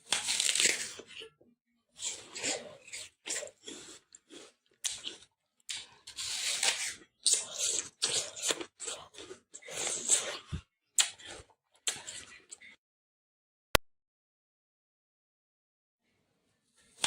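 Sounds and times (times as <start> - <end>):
apple being bitten and chewed: 0.0 - 1.3, 2.0 - 12.8.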